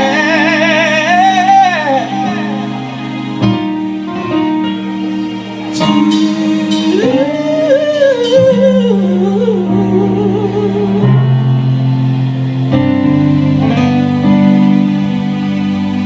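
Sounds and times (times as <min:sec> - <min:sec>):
live band playing slow ballad: 0:00.0 - 0:16.0.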